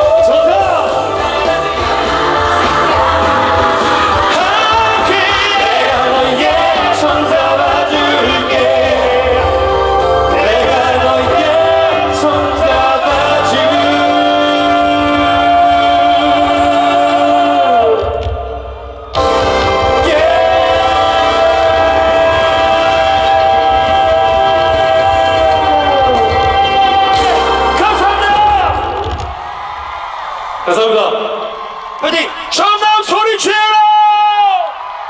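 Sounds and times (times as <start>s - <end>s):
people singing: 0.0s - 18.2s, 19.2s - 29.0s
live pop band: 0.0s - 31.5s.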